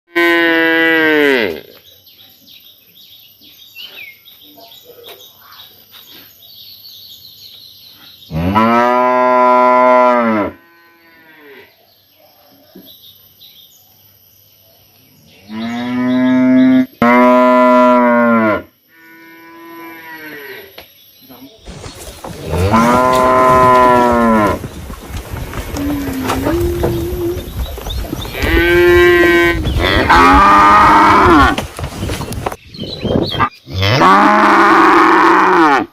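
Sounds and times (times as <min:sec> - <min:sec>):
cows mooing: 0:22.4 - 0:24.8, 0:25.6 - 0:31.6, 0:33.7 - 0:35.9.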